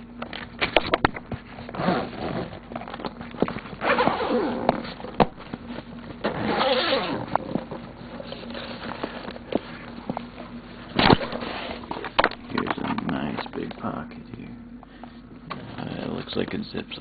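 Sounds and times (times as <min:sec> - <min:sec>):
zipper rasping: 0:01.7 - 0:02.6, 0:03.8 - 0:05.0, 0:06.2 - 0:07.4
zipper pull clicks: 0:03.8 - 0:04.7, 0:06.2 - 0:07.3.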